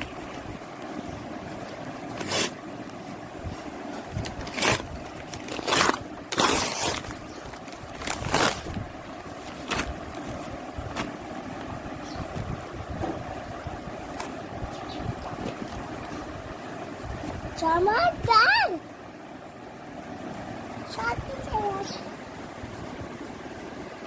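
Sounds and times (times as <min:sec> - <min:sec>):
clothing and packaging rustling: 0:00.0 - 0:17.7.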